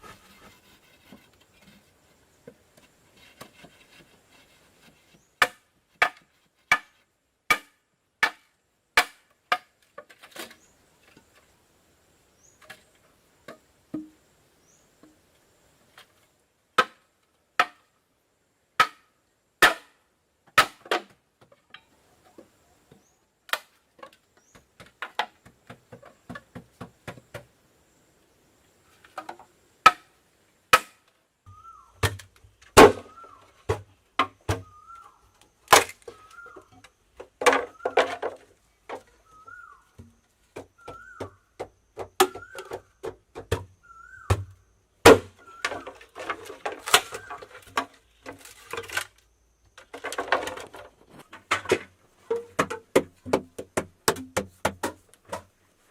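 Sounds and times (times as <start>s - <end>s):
chopping strikes on wood: 5.4s - 6.9s, 7.5s - 9.7s, 30.7s - 31.0s, 32.8s - 34.7s, 40.0s - 45.7s, 52.5s - 55.5s.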